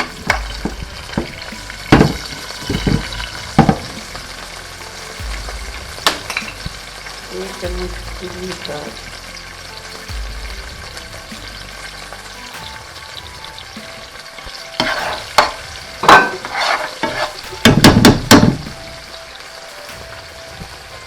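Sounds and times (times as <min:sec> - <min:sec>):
sauce sizzling in hot oil: 0:00.1 - 0:20.9
spoon stirring and scraping pan: 0:14.8 - 0:17.4.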